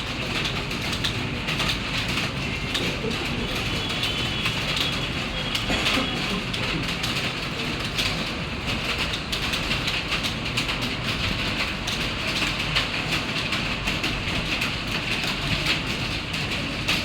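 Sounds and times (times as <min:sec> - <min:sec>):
fast typing on keyboard: 0:00.0 - 0:17.0.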